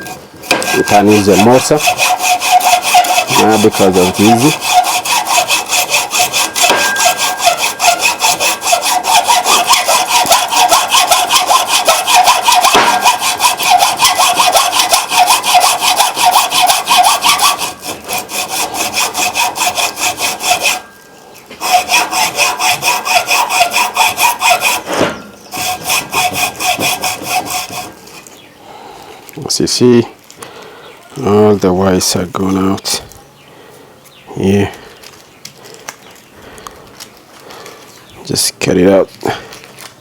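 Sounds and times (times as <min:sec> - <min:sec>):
hand saw cutting metal: 0:00.0 - 0:28.4.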